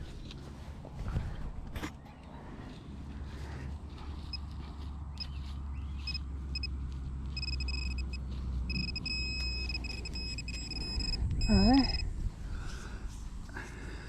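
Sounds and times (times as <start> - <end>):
metal detector beeping: 5.1 - 5.4, 6.0 - 12.1.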